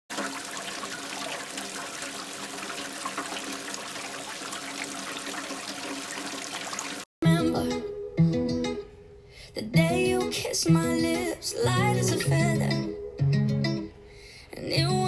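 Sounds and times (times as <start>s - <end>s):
rushing water: 0.1s - 7.1s.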